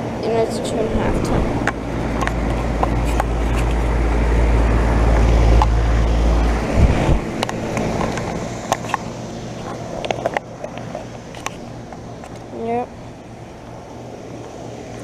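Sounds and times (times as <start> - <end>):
air conditioner compressor hum: 0.0 - 15.0
condenser fan rushing: 0.0 - 15.0
wind rumble on microphone: 0.0 - 15.0.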